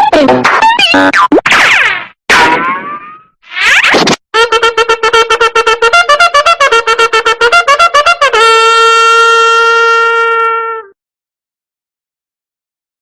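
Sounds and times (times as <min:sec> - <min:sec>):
comic horn toots: 0:02.4 - 0:11.0.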